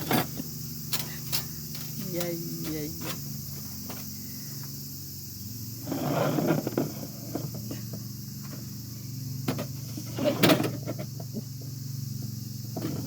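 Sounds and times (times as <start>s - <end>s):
metal clatter and scrape: 0.0s - 4.1s, 9.5s - 11.2s
steady high hiss: 0.0s - 12.8s
metal parts clicking: 0.9s - 3.2s.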